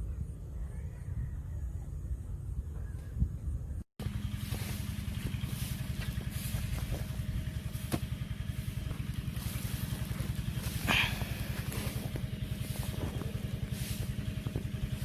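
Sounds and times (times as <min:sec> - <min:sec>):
engine running with fast pulse: 0:00.0 - 0:15.0.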